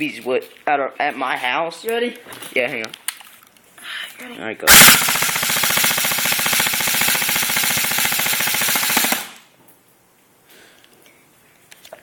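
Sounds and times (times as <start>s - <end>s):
airsoft gun full-auto burst: 4.7s - 9.5s.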